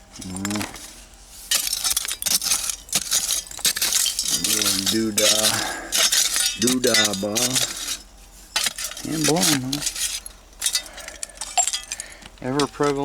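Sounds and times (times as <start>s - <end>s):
glass bottles and shards clinking: 0.0s - 0.9s, 1.5s - 13.0s.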